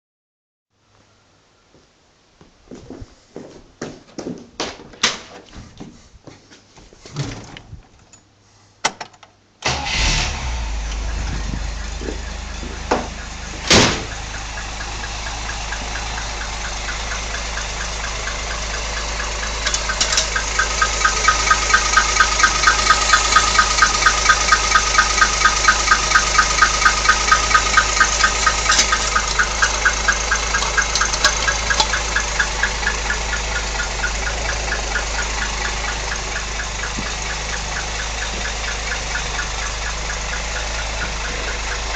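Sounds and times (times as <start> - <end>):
car engine starting and idling: 9.6 - 41.9
rhythmic engine knock: 10.9 - 41.9.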